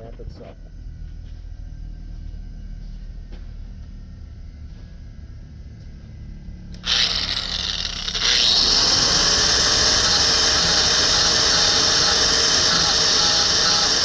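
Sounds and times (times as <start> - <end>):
power grinder grinding metal: 6.8 - 14.0.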